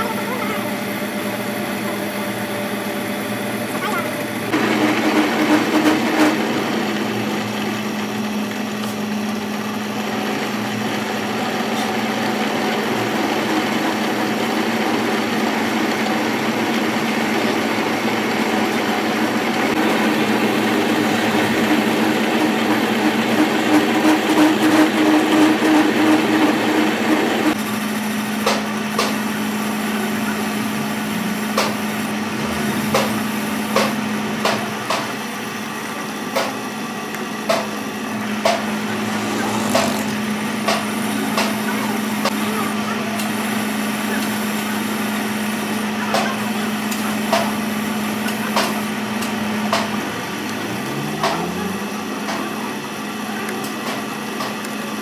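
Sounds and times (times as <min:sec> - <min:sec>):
harsh machine working noise: 0:00.0 - 0:55.0
workshop machine humming: 0:00.0 - 0:55.0
sharp knocks and clicks: 0:39.3 - 0:40.0.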